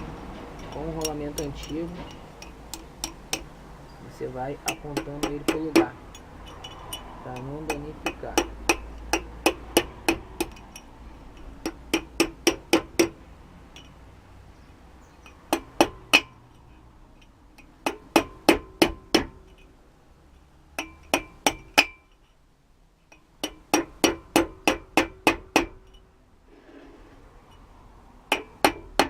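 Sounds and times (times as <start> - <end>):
hammer tapping on metal: 0.0 - 3.6, 4.6 - 14.0, 15.2 - 19.7, 20.7 - 22.2, 23.1 - 26.0, 28.3 - 29.0.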